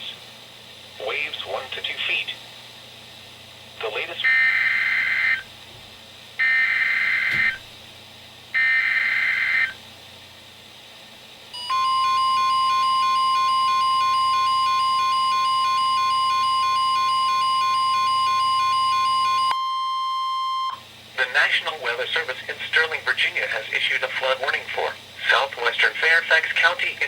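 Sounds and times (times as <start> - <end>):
steady warning alarm tone: 3.8 - 5.5, 6.4 - 7.7, 8.5 - 9.8, 11.5 - 23.0.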